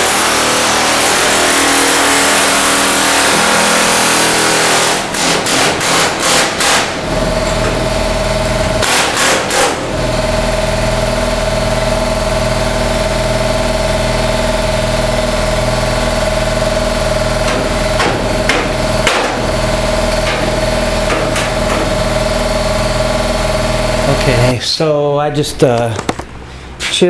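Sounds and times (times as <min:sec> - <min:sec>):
air chisel hammering sheet metal: 0:00.0 - 0:07.8, 0:08.8 - 0:10.0, 0:17.4 - 0:22.2.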